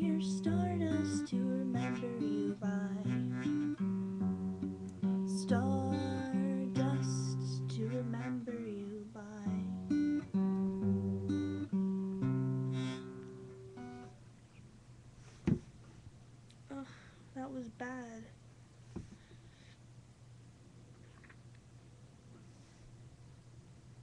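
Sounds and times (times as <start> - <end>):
acoustic guitar strumming: 0.0 - 14.2.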